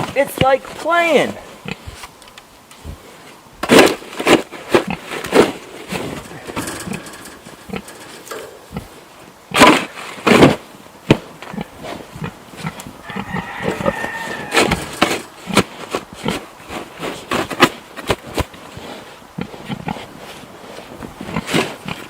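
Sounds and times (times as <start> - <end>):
snow shovel scraping snow: 2.9 - 8.8, 13.4 - 19.1.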